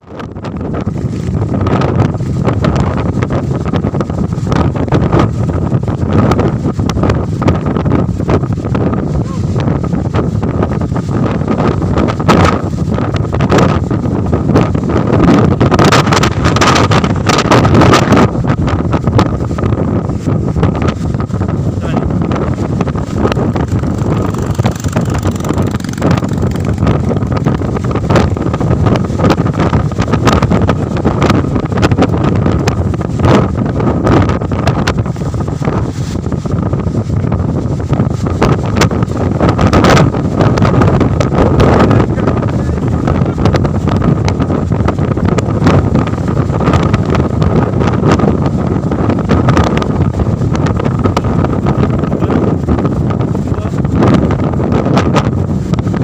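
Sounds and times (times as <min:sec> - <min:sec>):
wind buffeting microphone: 0:00.0 - 0:56.0
crackling clicks: 0:23.5 - 0:27.0.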